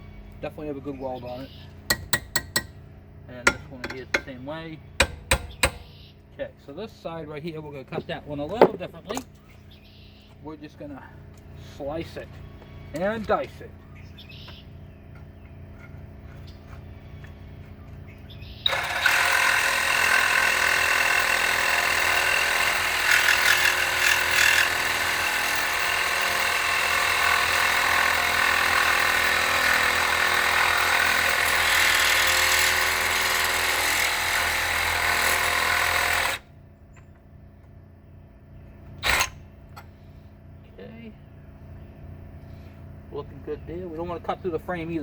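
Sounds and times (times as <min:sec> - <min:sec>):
electric grinder cutting steel: 0:18.7 - 0:36.4.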